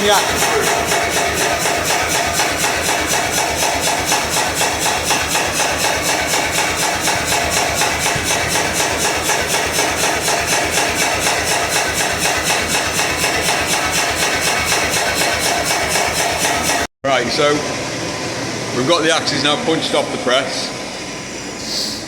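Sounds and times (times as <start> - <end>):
power hammer beating: 0.0 - 16.9.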